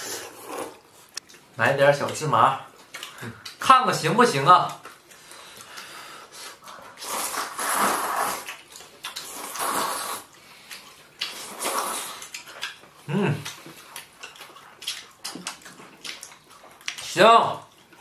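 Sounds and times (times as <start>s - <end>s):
slurping noodles and soup: 0.0s - 1.2s, 6.2s - 12.4s.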